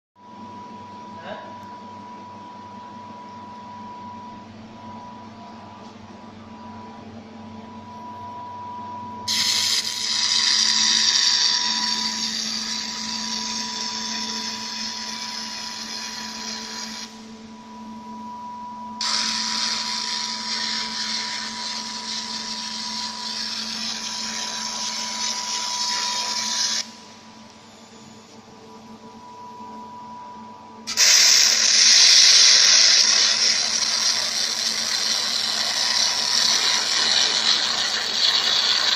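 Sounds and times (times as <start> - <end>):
steady machine hum: 0.2 - 38.9
loud laser welding hiss: 9.3 - 17.1, 19.0 - 26.9, 30.9 - 38.9.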